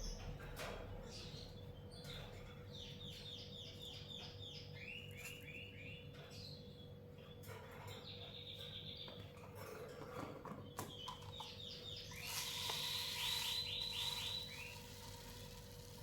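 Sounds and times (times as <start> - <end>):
lovebird chirping: 11.8 - 15.4.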